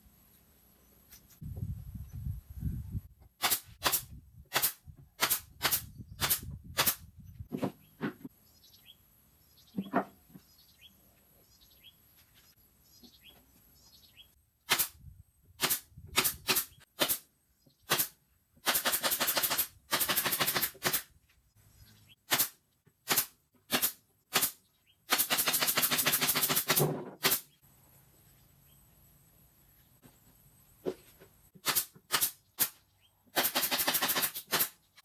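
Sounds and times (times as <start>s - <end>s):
rapid even clicking of tool: 17.9s - 21.1s, 22.3s - 27.4s, 33.4s - 34.8s.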